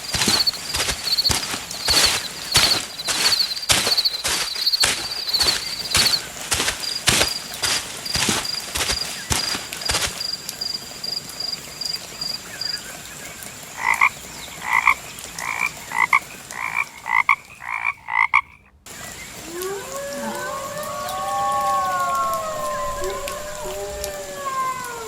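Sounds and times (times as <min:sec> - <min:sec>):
frog croaking: 0:00.0 - 0:06.2, 0:13.8 - 0:18.8
fast high chirping: 0:00.0 - 0:08.2
gliding rising and falling calls: 0:19.0 - 0:25.0.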